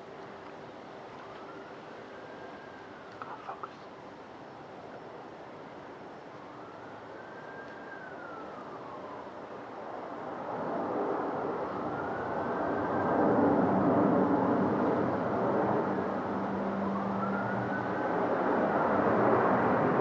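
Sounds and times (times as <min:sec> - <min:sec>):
faint whistling tone: 0:01.3 - 0:03.8, 0:16.5 - 0:18.1
airliner engine noise: 0:04.2 - 0:20.0.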